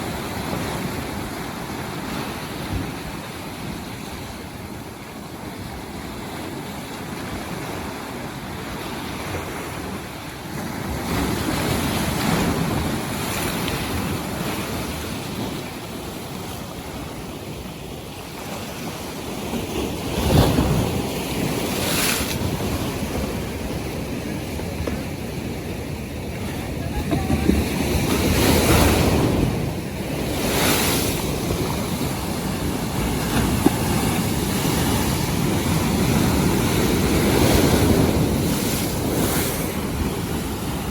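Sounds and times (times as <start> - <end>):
waves washing in: 0.0 - 40.9
wind buffeting microphone: 20.1 - 40.9.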